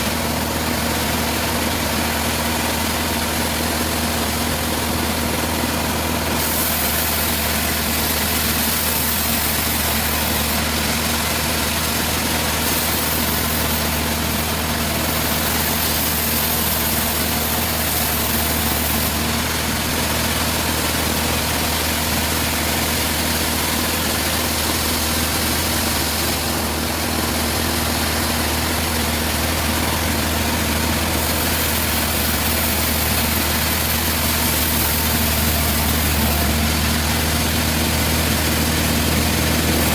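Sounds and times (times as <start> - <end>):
sawmill engine hum: 0.0 - 39.9
high hiss: 3.2 - 39.9.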